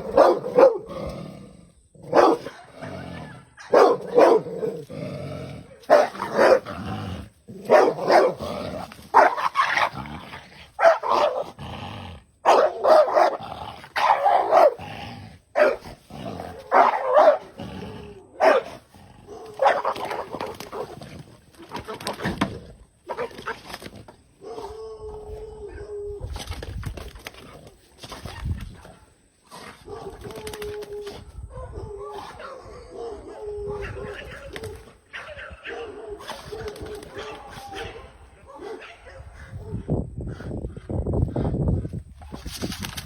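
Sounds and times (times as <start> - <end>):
dog barking: 0.0 - 0.9, 2.1 - 3.0, 3.6 - 4.6, 5.8 - 6.6, 7.7 - 8.4, 9.1 - 9.5, 10.8 - 11.4, 12.4 - 13.4, 14.0 - 14.8, 15.6 - 15.8, 16.7 - 17.6, 18.4 - 20.0, 31.5 - 34.5, 35.1 - 39.8.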